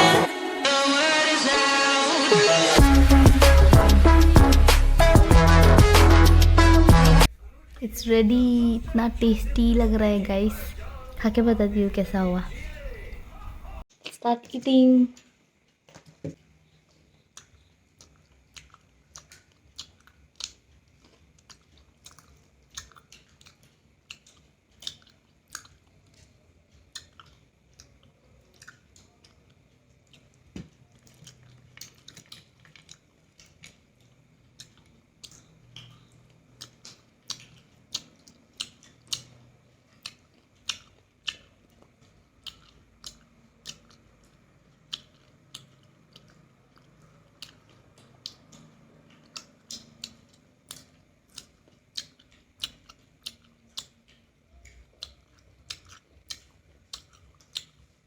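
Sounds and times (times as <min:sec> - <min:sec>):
person chewing and biting food: 0:15.2 - 0:58.0.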